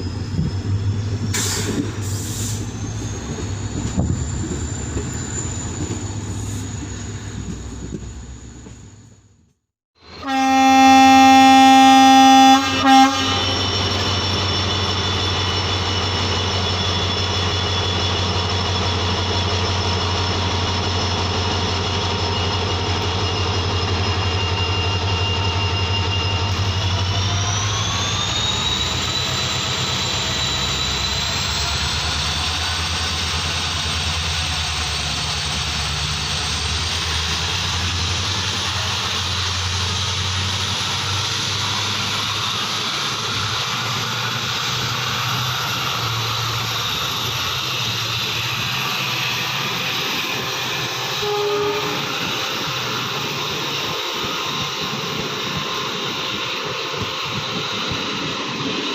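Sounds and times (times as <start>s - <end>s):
locomotive horn: 10.1s - 13.7s, 50.9s - 52.6s.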